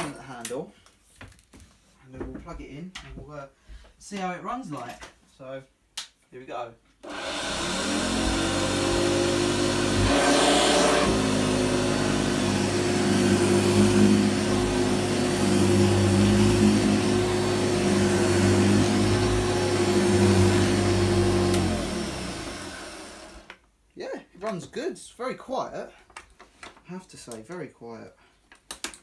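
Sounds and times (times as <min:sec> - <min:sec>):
vacuum cleaner motor running: 0:07.0 - 0:23.5.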